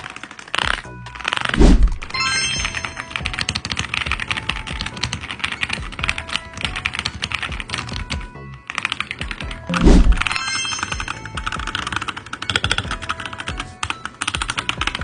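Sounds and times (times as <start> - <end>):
mechanical keyboard typing: 0.0 - 1.6, 2.7 - 10.4, 11.0 - 15.0
short rising chime: 1.9 - 3.2, 9.7 - 11.4.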